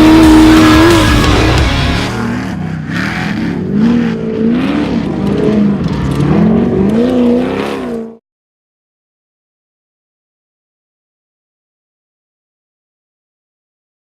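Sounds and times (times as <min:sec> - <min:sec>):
race vehicle engine revving: 0:00.0 - 0:08.2.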